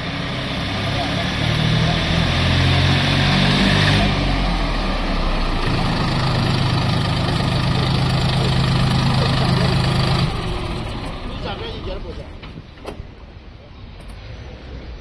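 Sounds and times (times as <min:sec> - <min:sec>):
tractor engine running: 0:00.0 - 0:13.3.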